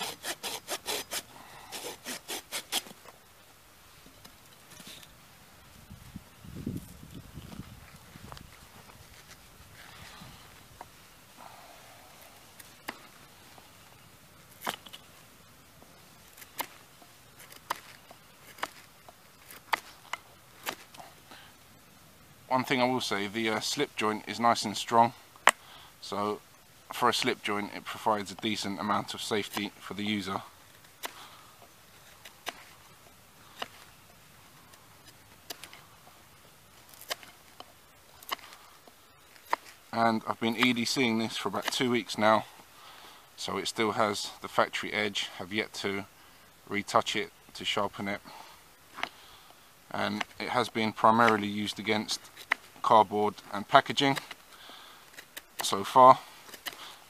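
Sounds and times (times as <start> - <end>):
sharp knocks and cracks of knife: 32.2 - 32.8, 36.9 - 38.6.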